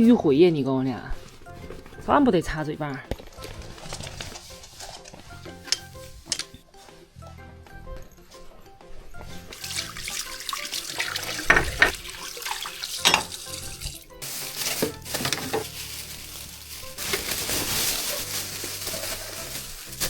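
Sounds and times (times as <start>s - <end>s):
soft background music: 0.0s - 20.0s
tap water running into sink: 9.5s - 15.5s.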